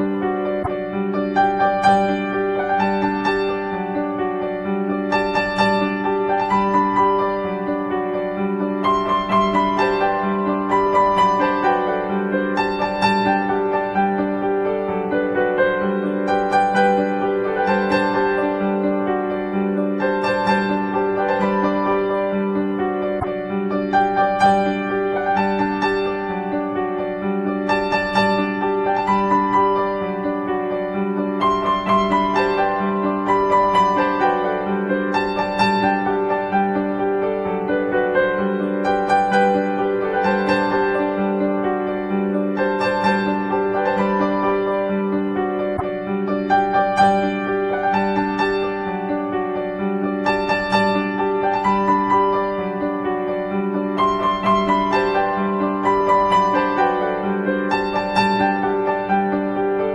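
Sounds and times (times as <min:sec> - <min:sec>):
piano melody: 0:00.0 - 0:59.9.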